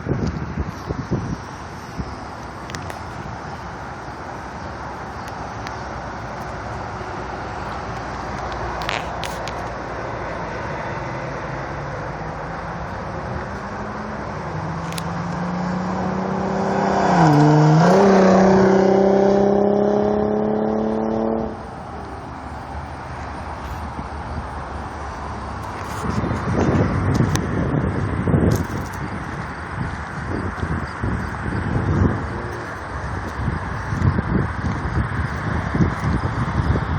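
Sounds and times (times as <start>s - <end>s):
car engine accelerating by: 10.0s - 22.3s.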